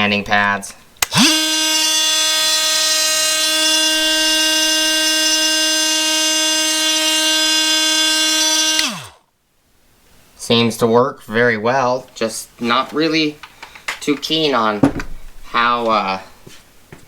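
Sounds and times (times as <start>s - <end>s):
oscillating multi-tool buzzing: 1.0s - 9.2s.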